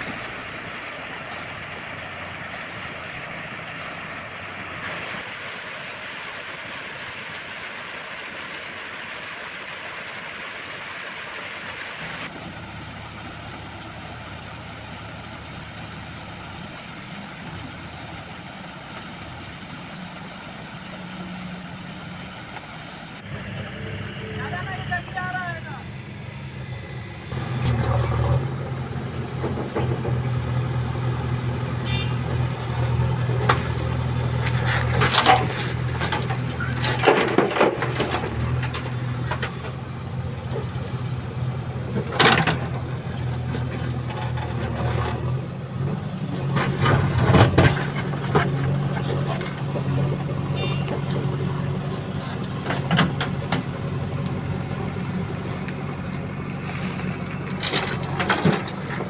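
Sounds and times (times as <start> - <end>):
diesel engine running under load: 0.0 - 8.9, 12.3 - 59.0
bucket dumping soil crashes: 56.6 - 59.0.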